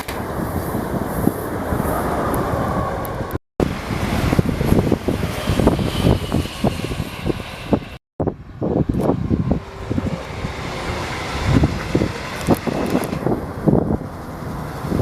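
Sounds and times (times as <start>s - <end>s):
steady outdoor rumble: 0.0s - 15.0s
wind buffeting microphone: 0.0s - 15.0s.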